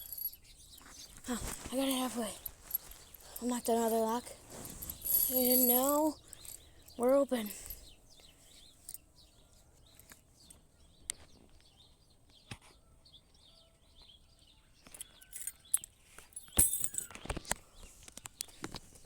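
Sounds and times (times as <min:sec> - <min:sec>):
birds chirping: 0:00.0 - 0:19.0.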